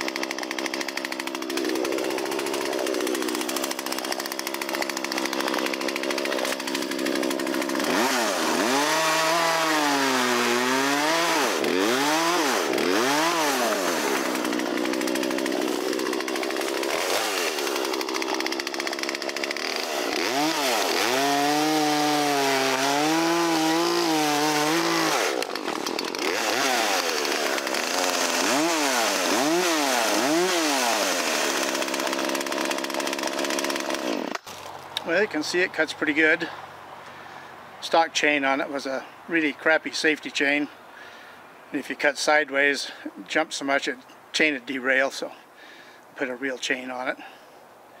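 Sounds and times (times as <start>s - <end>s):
chainsaw cutting wood: 0.0s - 35.2s.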